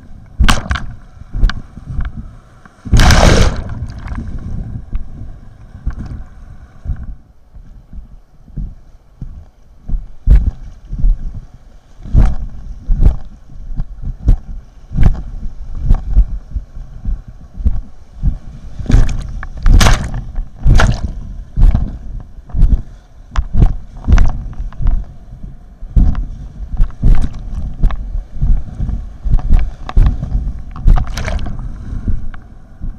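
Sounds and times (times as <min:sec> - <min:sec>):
rushing water: 0:02.8 - 0:04.8, 0:30.8 - 0:32.2
kayak thumps and splashes: 0:02.9 - 0:04.4, 0:18.9 - 0:21.2, 0:30.8 - 0:31.6.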